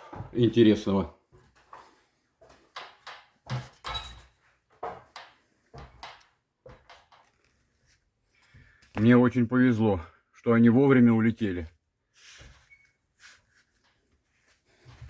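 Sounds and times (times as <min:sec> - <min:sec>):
knocks and scuffs: 0:00.0 - 0:09.2.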